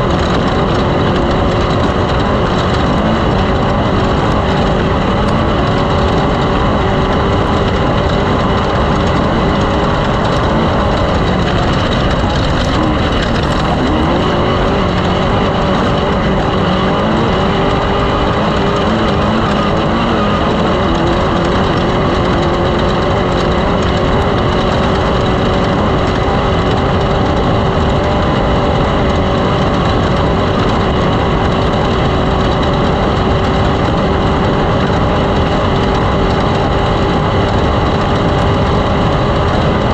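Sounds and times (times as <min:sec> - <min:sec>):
loud engine running: 0:00.0 - 0:39.9.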